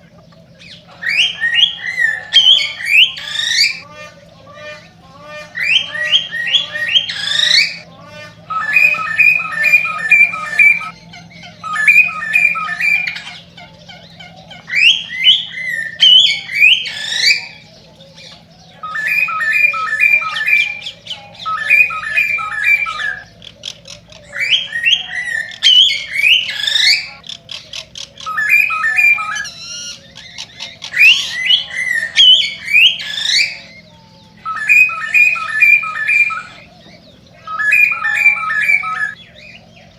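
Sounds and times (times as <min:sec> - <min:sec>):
cockatiel chirping and whistling: 0:05.6 - 0:07.8, 0:08.5 - 0:17.5, 0:18.8 - 0:23.3, 0:24.2 - 0:33.8, 0:34.4 - 0:36.6, 0:37.5 - 0:39.2.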